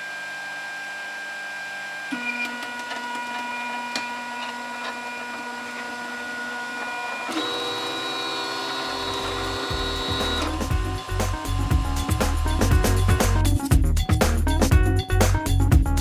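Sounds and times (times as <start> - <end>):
printer stepper motors whining: 2.2 - 13.5.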